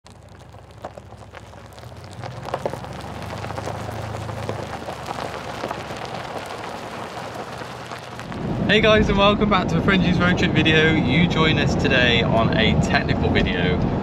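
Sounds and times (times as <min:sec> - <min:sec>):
rain on a hard surface: 0:00.1 - 0:09.0.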